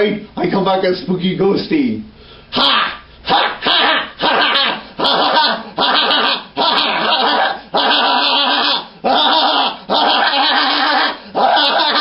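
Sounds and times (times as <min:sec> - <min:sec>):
person wailing in ghost voice: 0:02.6 - 0:03.0, 0:03.6 - 0:12.0.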